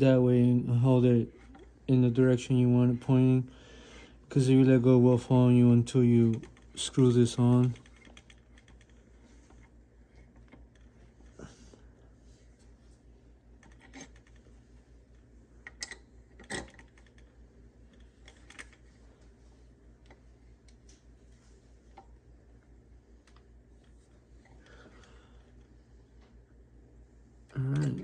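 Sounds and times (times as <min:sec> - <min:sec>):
low steady hum: 0:00.0 - 0:28.0
metal bike parts clicking: 0:15.6 - 0:17.2.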